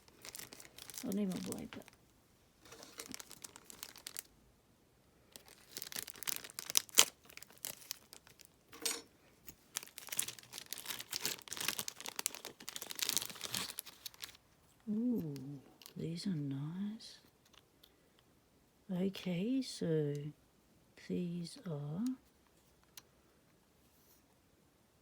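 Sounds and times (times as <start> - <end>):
packaging crinkling and tearing: 0.0 - 2.0, 2.6 - 4.3, 5.3 - 8.5, 9.5 - 14.4.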